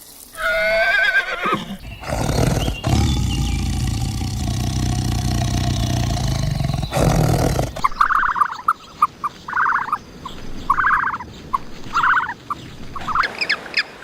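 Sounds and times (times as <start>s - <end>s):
large animal's low call: 1.5s - 7.9s.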